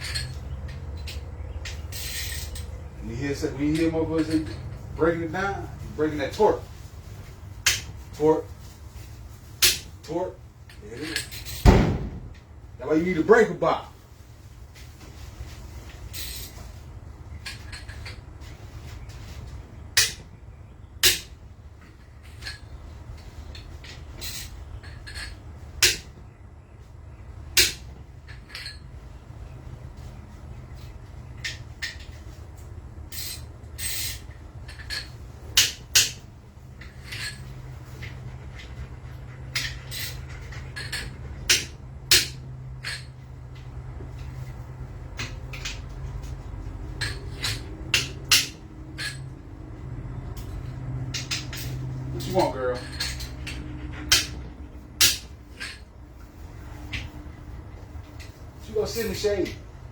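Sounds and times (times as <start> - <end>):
metallic clinks of hand tools: 3.3 - 5.5.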